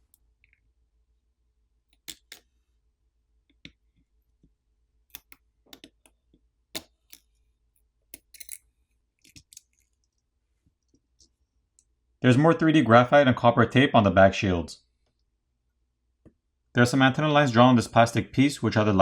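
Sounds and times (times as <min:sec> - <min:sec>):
small sharp clicks and taps: 0:05.1 - 0:07.3.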